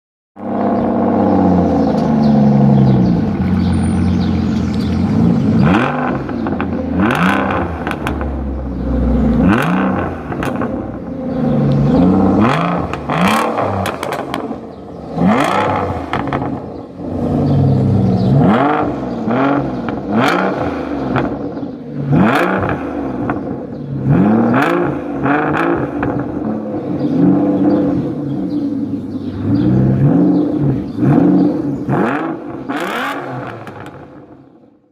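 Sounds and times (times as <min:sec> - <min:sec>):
car engine revving: 0:00.4 - 0:34.8
exhaust crackles and pops: 0:09.5 - 0:11.0, 0:11.6 - 0:16.8, 0:32.0 - 0:34.4.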